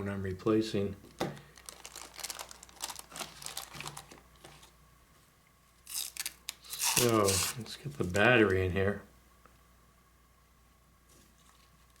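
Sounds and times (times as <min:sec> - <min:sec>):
plastic packaging crinkling: 0:01.1 - 0:04.8, 0:05.8 - 0:08.7, 0:11.1 - 0:12.0.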